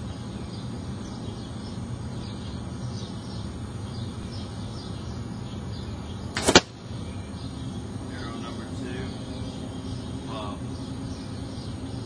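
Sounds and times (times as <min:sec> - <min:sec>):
birds chirping: 0:00.0 - 0:12.0
arrow whooshing in flight: 0:06.4 - 0:06.8.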